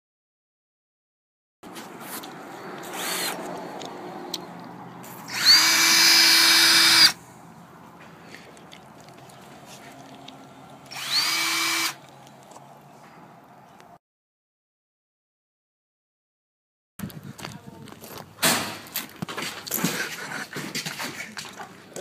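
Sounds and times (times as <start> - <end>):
electric drill whine: 2.9 - 3.4, 5.3 - 7.2, 10.9 - 12.0.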